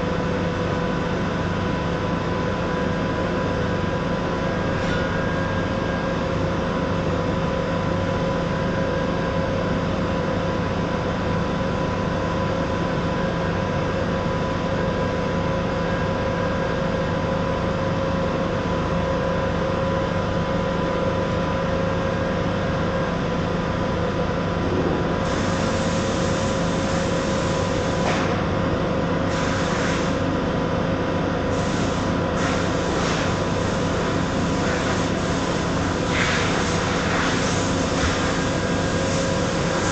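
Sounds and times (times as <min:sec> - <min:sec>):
welder electrical hum and hiss: 0:23.0 - 0:39.9.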